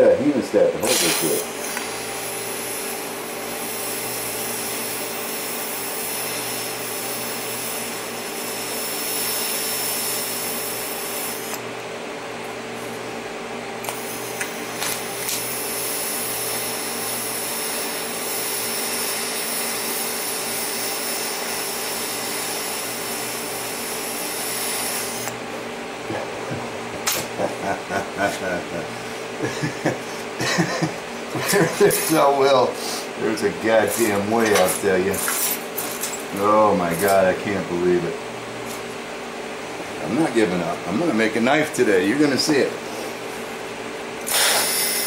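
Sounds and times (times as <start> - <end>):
blower motor hum: 0.0 - 45.0
hiss of air and flame: 0.8 - 11.6, 13.8 - 25.4, 44.2 - 45.0.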